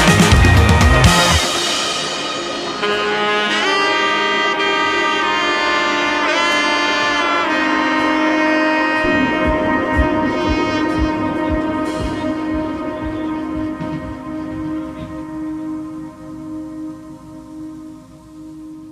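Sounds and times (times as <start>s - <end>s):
melodic lead with pitch bends: 8.8s - 18.9s
steady low beat: 9.0s - 18.9s.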